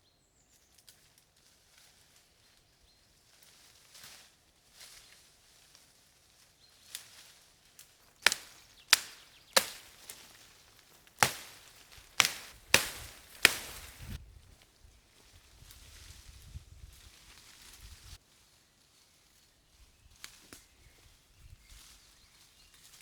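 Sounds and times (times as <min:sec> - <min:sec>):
axe chopping wood: 0:08.2 - 0:10.4, 0:11.0 - 0:14.2.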